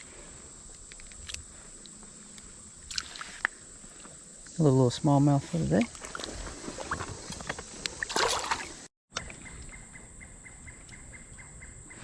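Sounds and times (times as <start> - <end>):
insect chirping: 0.0 - 12.0
creek water splashing: 2.8 - 9.4.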